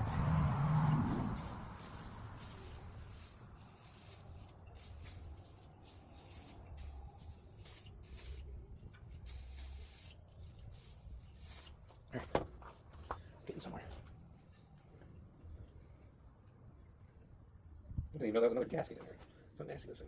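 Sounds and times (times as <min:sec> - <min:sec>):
scratchy hissing cleaning strokes: 0:00.0 - 0:08.5, 0:09.2 - 0:11.8.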